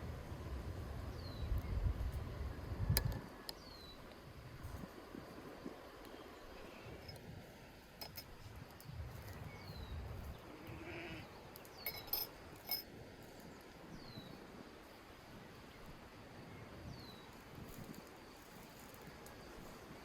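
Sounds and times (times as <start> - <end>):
goat bleating: 10.5 - 11.2.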